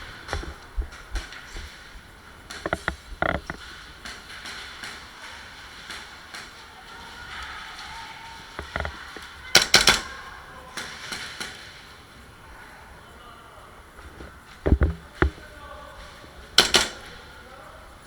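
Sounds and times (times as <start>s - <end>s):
faint clicks and knocks: 0.0s - 12.3s, 13.9s - 17.5s
airsoft gun cracks: 8.6s - 10.2s, 16.6s - 17.3s.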